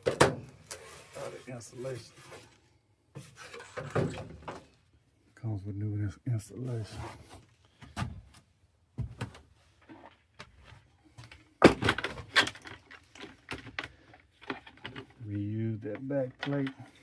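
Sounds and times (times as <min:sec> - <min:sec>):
clicks and knocks of handled metal parts: 0:11.2 - 0:17.0.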